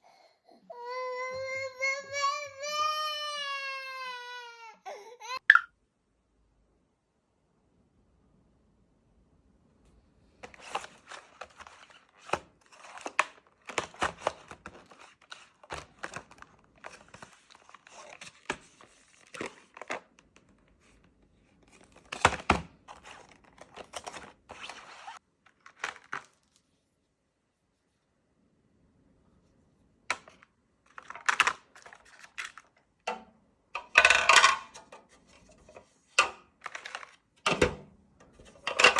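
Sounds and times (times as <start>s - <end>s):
paper or plastic rustling: 10.4s - 20.2s, 21.6s - 26.9s, 30.2s - 32.7s, 36.6s - 37.3s.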